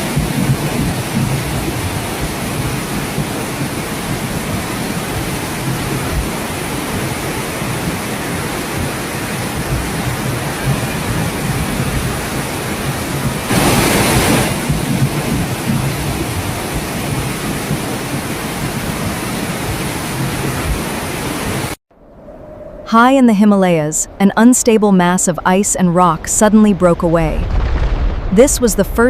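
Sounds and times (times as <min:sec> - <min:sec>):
heavy water rushing: 0:00.0 - 0:21.8
low rumble: 0:27.0 - 0:29.0.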